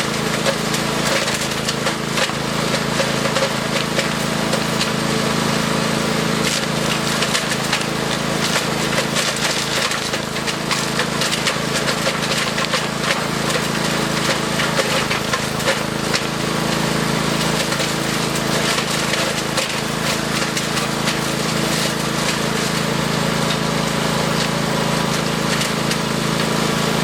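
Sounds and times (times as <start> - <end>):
crackle of wood chipping: 0.0 - 5.0, 6.4 - 26.6
wood chipper engine droning: 0.0 - 27.0.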